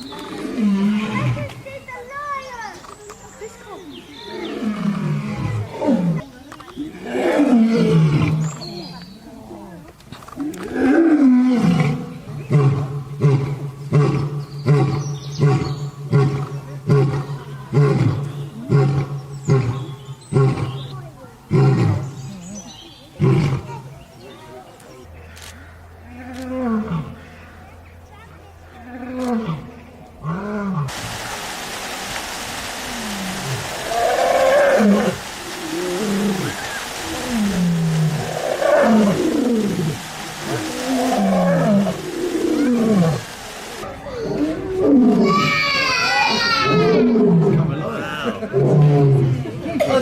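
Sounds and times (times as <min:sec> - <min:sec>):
steady hiss: 0:30.8 - 0:46.5
lion roaring and grunting: 0:33.1 - 0:43.2, 0:44.0 - 0:49.5.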